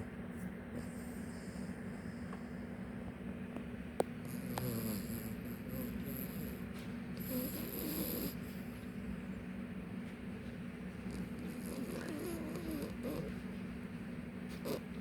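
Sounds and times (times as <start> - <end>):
steady low hum: 0.0 - 15.0
dog snoring: 0.7 - 2.4, 4.1 - 9.0, 10.9 - 13.5, 14.5 - 15.0.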